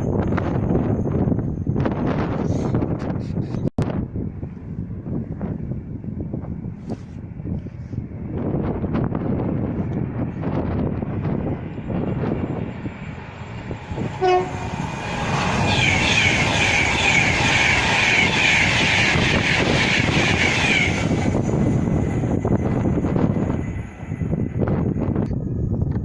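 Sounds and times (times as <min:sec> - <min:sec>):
train passing at speed: 0:00.0 - 0:03.1, 0:03.9 - 0:26.0
short train horn toot: 0:14.1 - 0:14.9.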